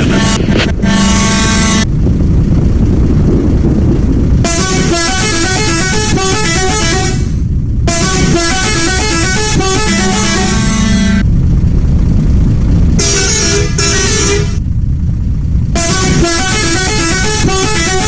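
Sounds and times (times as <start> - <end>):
bus musical horn: 0.0 - 1.9, 4.4 - 11.2, 13.0 - 14.6, 15.8 - 18.0
bus engine rumbling: 0.0 - 18.0.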